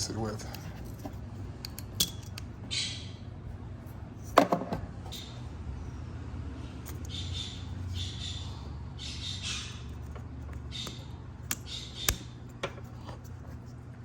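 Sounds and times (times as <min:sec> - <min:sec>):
steady low hum: 0:00.0 - 0:14.0
bird squawking: 0:02.7 - 0:03.3, 0:07.0 - 0:10.0, 0:10.7 - 0:12.4.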